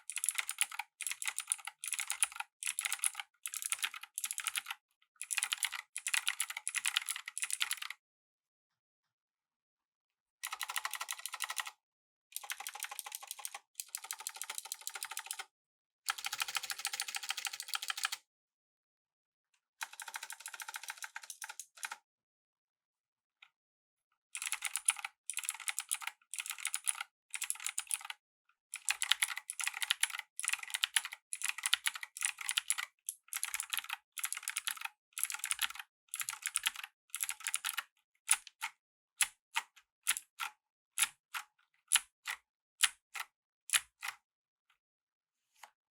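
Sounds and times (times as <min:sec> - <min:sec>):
mechanical keyboard typing clicks: 0:00.0 - 0:07.9, 0:10.4 - 0:11.7, 0:12.4 - 0:15.5, 0:16.1 - 0:18.2, 0:19.8 - 0:22.0, 0:24.4 - 0:28.2, 0:28.8 - 0:44.2.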